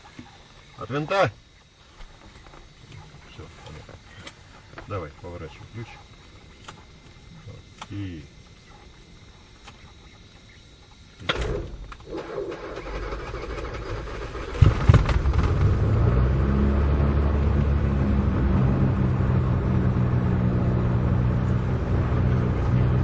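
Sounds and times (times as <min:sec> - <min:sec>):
engine starter turning over: 0:11.3 - 0:15.8
aircraft engine idling: 0:11.6 - 0:15.8, 0:17.3 - 0:23.0
engine coughing: 0:12.1 - 0:14.6.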